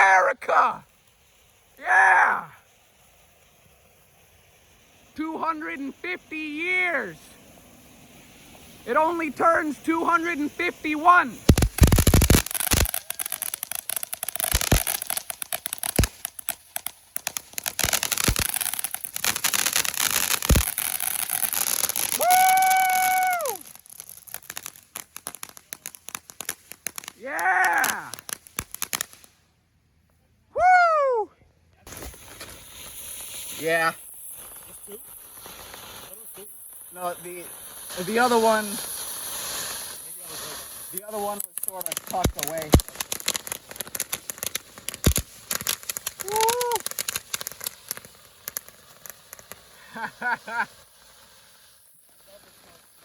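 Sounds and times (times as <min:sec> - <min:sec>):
fireworks crackling: 0:00.0 - 0:30.1, 0:31.7 - 0:53.0
person shouting woo: 0:01.8 - 0:02.5, 0:22.1 - 0:23.7, 0:27.2 - 0:28.2, 0:30.5 - 0:31.4, 0:46.2 - 0:46.9
person whooping: 0:01.8 - 0:02.6, 0:22.1 - 0:23.7, 0:27.2 - 0:28.2, 0:30.5 - 0:31.4, 0:46.2 - 0:46.9.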